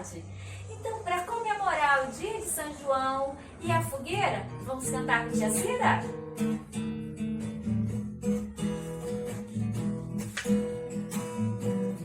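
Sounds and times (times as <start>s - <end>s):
acoustic guitar strumming chords: 4.4s - 12.0s.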